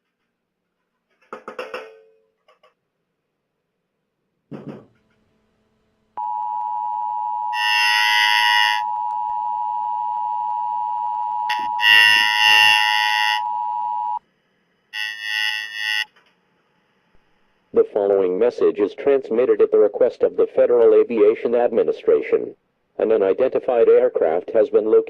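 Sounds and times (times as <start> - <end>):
brief thump: 4.5 - 5.1
screeching digital data bursts: 7.5 - 9.0, 11.4 - 14.2, 15.0 - 16.1.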